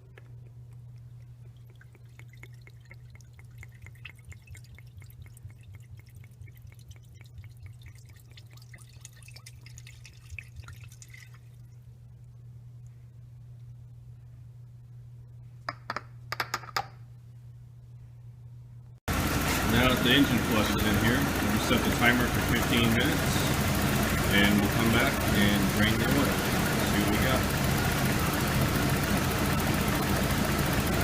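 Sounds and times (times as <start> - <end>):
liquid trickling and dripping: 0.1 - 11.9
low hum: 17.0 - 31.0.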